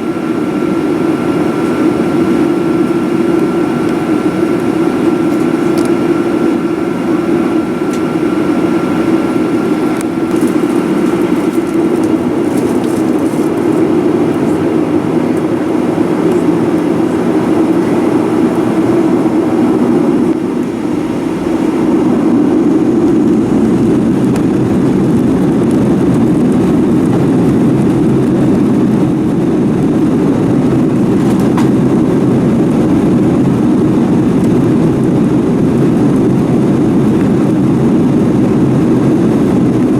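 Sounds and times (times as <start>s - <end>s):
jet engine rumble in cabin: 0.0s - 39.9s.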